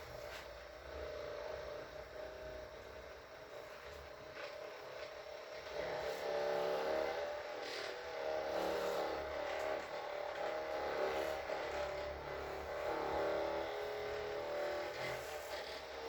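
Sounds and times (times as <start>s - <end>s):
small electric motor whirring: 0.0s - 16.0s.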